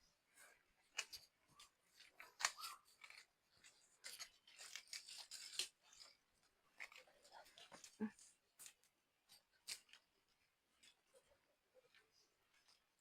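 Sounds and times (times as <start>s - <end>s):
dry bamboo leaves crackling: 2.4s - 6.2s.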